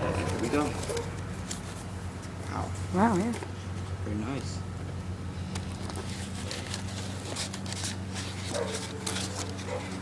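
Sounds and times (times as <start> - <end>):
handling clicks and rustles: 0.0 - 2.4, 5.5 - 10.0.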